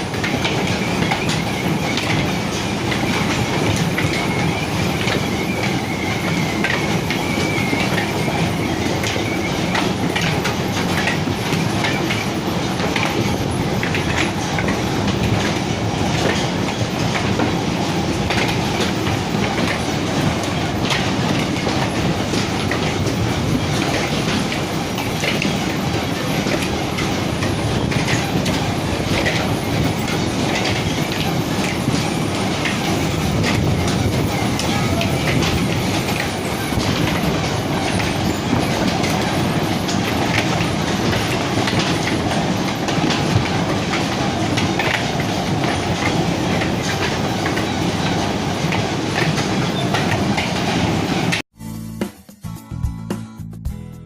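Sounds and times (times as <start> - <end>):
clatter of knocks and rattles: 0.0 - 51.4.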